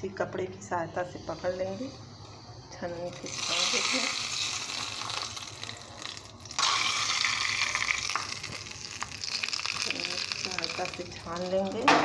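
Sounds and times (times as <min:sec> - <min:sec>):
hot oil sizzling and trickling: 0:03.0 - 0:12.0.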